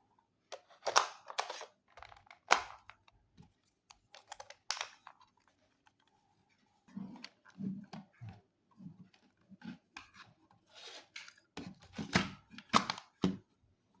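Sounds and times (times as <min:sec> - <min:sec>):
plastic cassette player clicks and rattles: 0:00.5 - 0:03.1, 0:03.9 - 0:06.1, 0:12.6 - 0:13.3.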